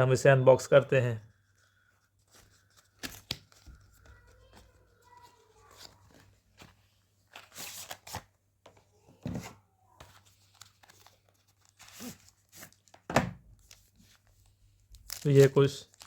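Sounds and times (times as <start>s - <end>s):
packaging tearing and crinkling: 14.9s - 16.0s.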